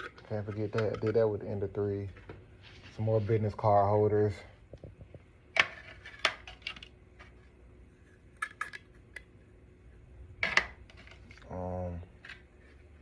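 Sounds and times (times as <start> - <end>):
plastic objects clicking and clacking: 0.0 - 1.3.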